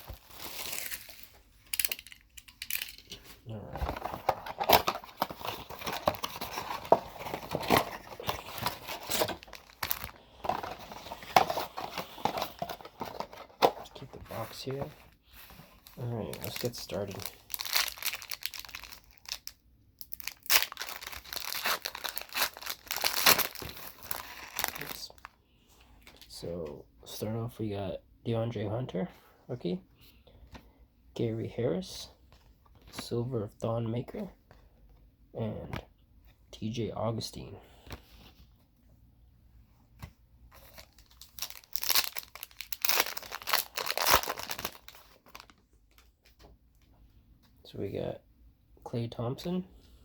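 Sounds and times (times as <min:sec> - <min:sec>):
wrapper tearing and crinkling: 0:00.0 - 0:03.0, 0:04.0 - 0:13.5, 0:15.8 - 0:25.2, 0:40.6 - 0:45.5.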